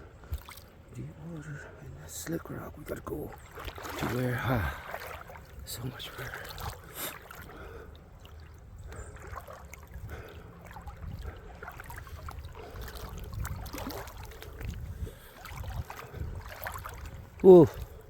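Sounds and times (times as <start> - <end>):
water running over rocks: 2.1 - 8.7, 15.2 - 17.9.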